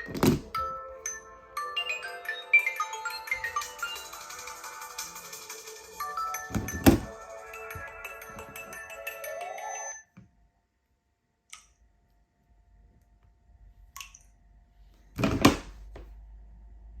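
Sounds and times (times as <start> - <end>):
phone ringtone melody: 0.5 - 10.1.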